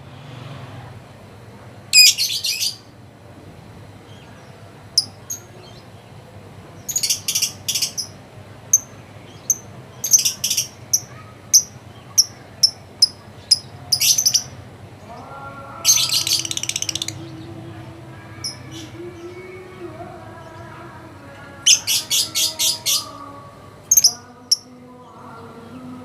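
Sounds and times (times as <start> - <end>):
lovebird chirping: 23.9 - 24.7.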